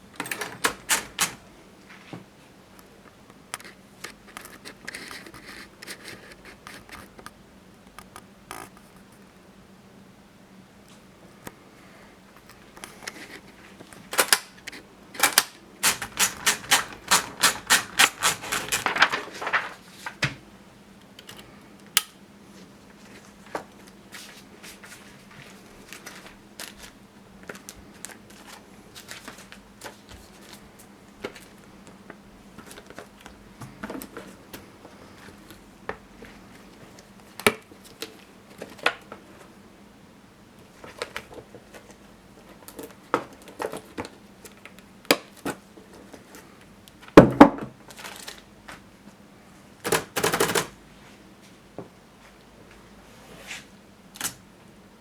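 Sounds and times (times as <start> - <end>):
typewriter keystrokes: 0.1 - 1.5, 14.0 - 19.7, 49.8 - 50.8
typewriter mechanism clicks: 0.1 - 1.5, 14.0 - 19.2, 49.9 - 50.7.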